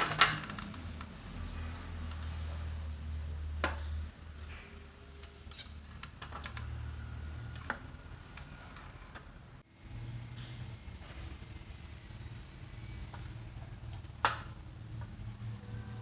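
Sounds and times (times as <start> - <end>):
small hard parts clicking: 0.0 - 1.2.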